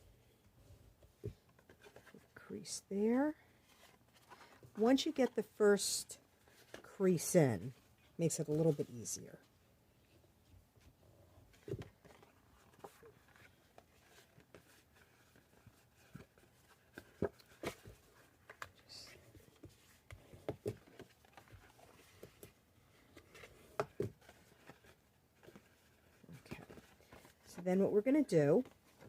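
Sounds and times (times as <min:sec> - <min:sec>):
paper rustling: 0:01.2 - 0:02.4, 0:03.5 - 0:05.4, 0:11.5 - 0:29.0.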